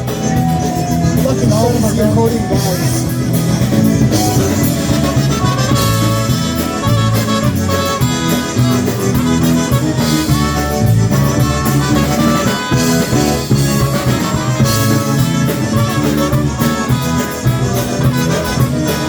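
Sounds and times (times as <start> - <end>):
polka band with accordion: 0.0 - 19.0.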